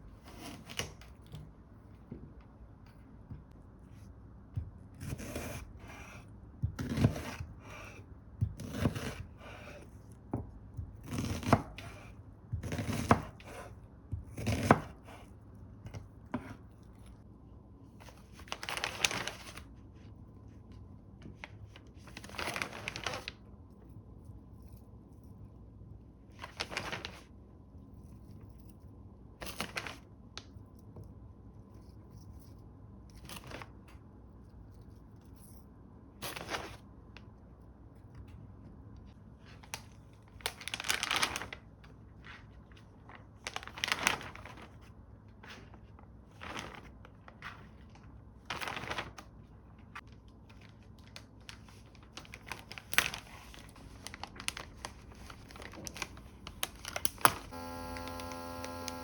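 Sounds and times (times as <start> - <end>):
plastic bags rustling and crinkling: 22.1 - 23.3, 40.4 - 41.6, 42.3 - 44.9, 45.6 - 49.2, 50.0 - 57.6
plastic tearing: 40.4 - 41.6, 52.2 - 59.0.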